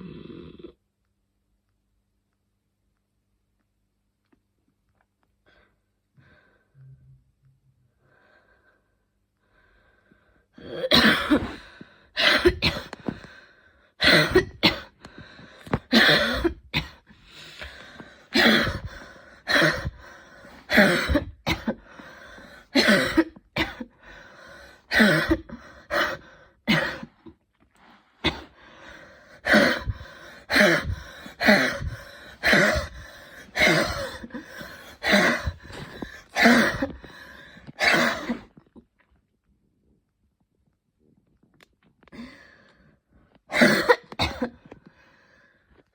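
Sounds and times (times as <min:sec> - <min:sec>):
woman coughing fit: 0:10.7 - 0:11.6, 0:12.2 - 0:13.2, 0:14.0 - 0:15.0, 0:15.7 - 0:17.1, 0:18.3 - 0:20.0, 0:20.7 - 0:21.9, 0:22.7 - 0:24.0, 0:24.9 - 0:27.4, 0:28.2 - 0:28.5, 0:29.4 - 0:37.1, 0:37.8 - 0:38.6, 0:43.5 - 0:44.7.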